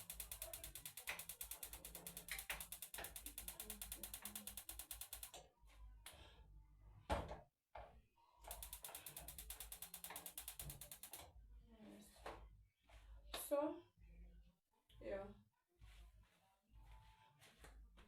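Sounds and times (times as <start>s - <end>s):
rapid mechanical ticking: 0.0s - 5.4s, 8.5s - 11.3s.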